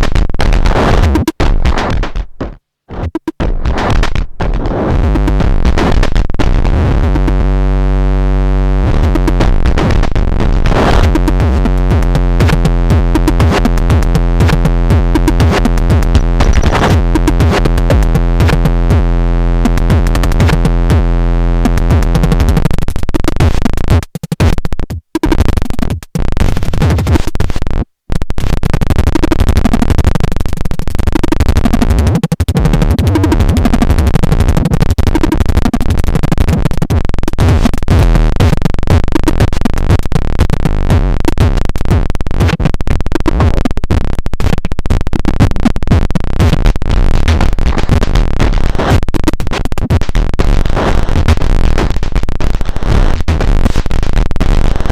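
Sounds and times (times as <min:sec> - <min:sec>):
loud noise music drone: 0:10.8 - 0:22.6.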